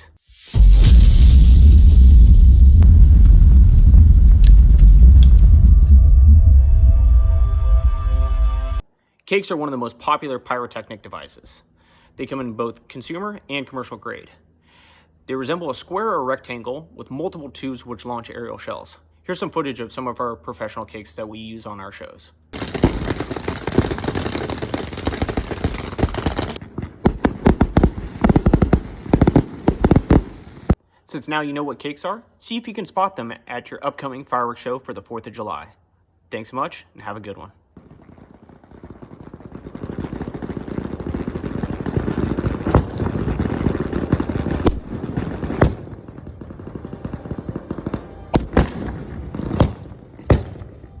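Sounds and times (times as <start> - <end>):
firework crackle: 0.3 - 6.0, 22.6 - 30.8, 37.8 - 50.8.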